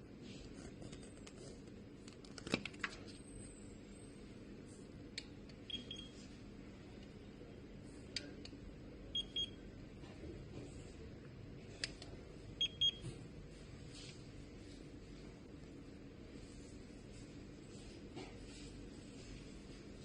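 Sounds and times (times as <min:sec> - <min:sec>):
thermometer beeping: 0:05.6 - 0:06.2, 0:09.1 - 0:09.6, 0:12.6 - 0:13.0.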